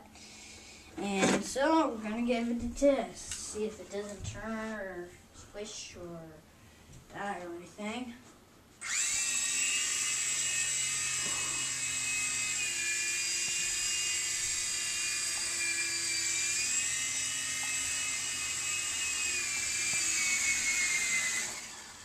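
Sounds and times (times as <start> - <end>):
toy helicopter rotor whine: 8.8 - 22.0.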